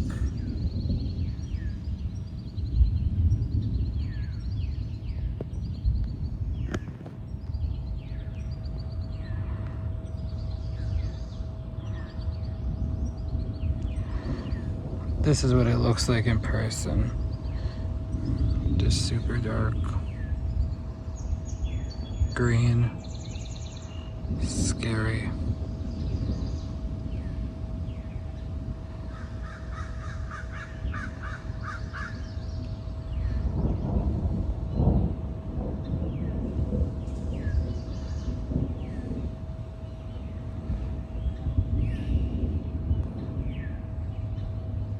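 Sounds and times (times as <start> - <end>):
birds chirping: 0.0 - 44.9
faint steady hum: 0.0 - 44.9
low steady rumble: 0.0 - 44.9
crow cawing: 29.0 - 32.2.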